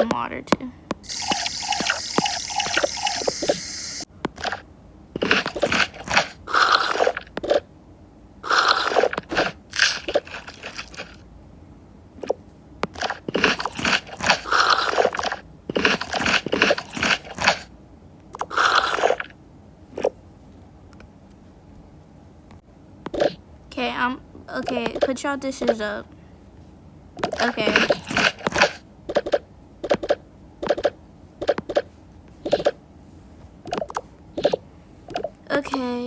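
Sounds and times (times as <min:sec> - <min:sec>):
crunchy chewing and biting: 0:01.0 - 0:04.6, 0:05.2 - 0:07.7, 0:08.4 - 0:11.2, 0:12.2 - 0:17.7, 0:18.3 - 0:20.2, 0:27.2 - 0:32.8.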